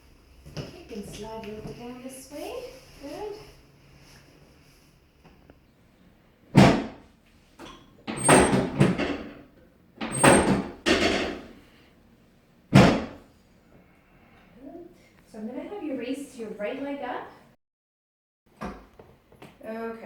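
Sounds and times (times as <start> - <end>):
treatment table knocking and rattling: 6.5 - 7.0, 7.6 - 11.7, 12.7 - 13.3.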